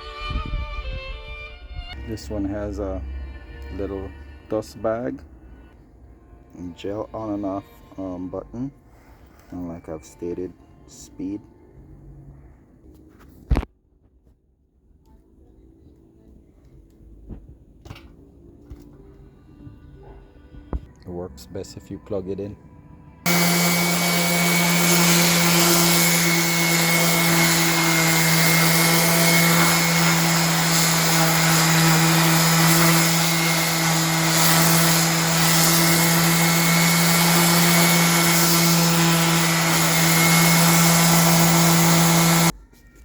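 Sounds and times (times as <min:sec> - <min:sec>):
electric sander on wood: 0:23.3 - 0:42.5.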